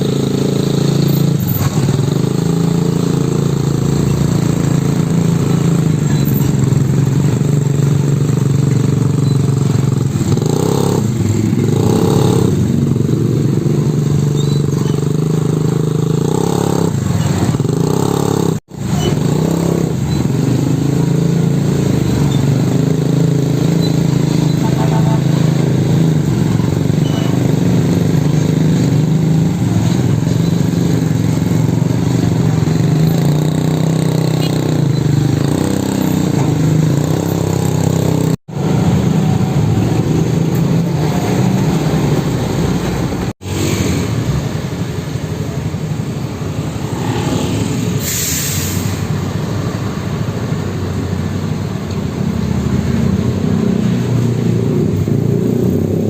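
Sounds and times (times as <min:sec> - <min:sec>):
diesel truck engine drone: 0:00.0 - 0:56.0
air hiss: 0:47.8 - 0:49.2.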